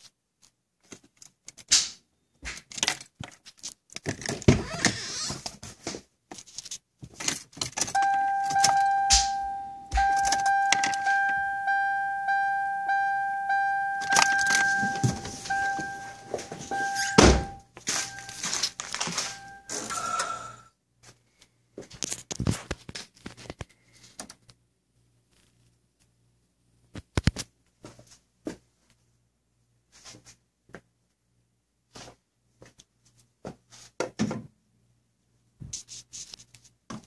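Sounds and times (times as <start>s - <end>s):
car key jangling and clicking: 7.2s - 11.8s, 13.6s - 19.7s
car electronic warning tone: 8.0s - 20.7s
heavy thunks: 14.0s - 19.9s.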